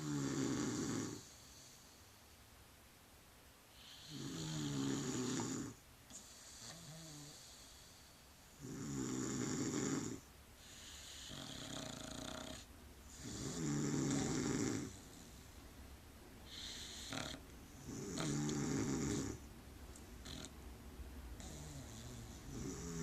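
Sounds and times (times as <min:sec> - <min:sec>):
loud fluttering snores: 0:00.0 - 0:01.7, 0:03.8 - 0:08.0, 0:08.6 - 0:15.4, 0:16.5 - 0:19.4, 0:20.2 - 0:20.6, 0:21.4 - 0:23.0
soft hissing breaths: 0:00.0 - 0:23.0.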